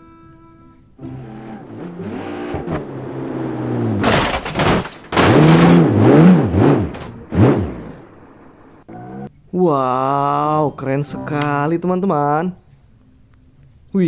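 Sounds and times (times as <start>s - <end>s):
sports car engine revving: 1.0s - 9.4s.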